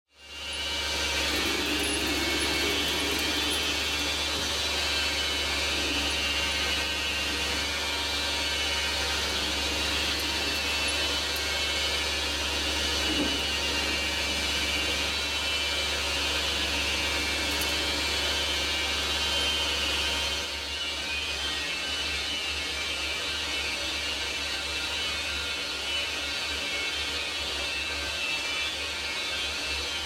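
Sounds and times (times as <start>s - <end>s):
metal lathe running: 0.2s - 30.0s.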